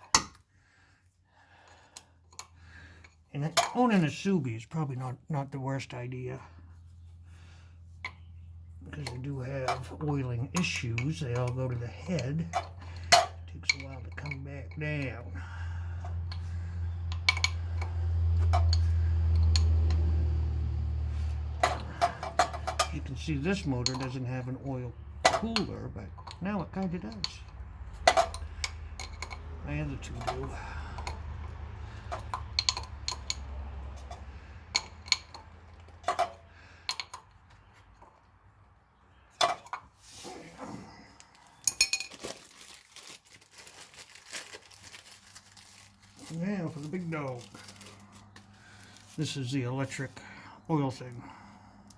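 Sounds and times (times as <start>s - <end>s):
metal tools clinking: 8.9s - 20.2s, 21.0s - 38.2s, 39.3s - 39.9s, 41.6s - 42.9s, 44.6s - 50.1s.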